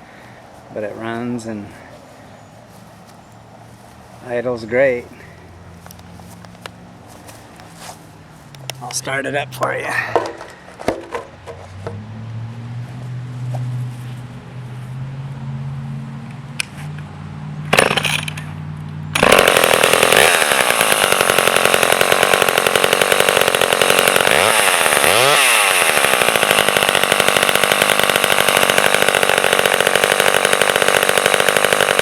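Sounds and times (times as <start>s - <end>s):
chainsaw pull-cord: 17.7s - 18.5s, 19.1s - 32.0s
chainsaw engine running: 17.7s - 32.0s.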